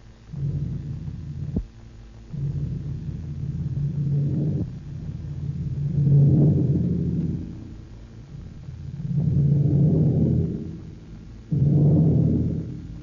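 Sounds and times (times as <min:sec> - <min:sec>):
low sustained musical chords: 0:02.2 - 0:13.0.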